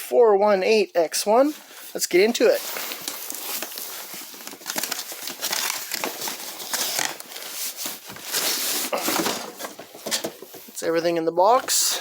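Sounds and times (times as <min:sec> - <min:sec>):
packaging crinkling and rustling: 0:01.4 - 0:10.8.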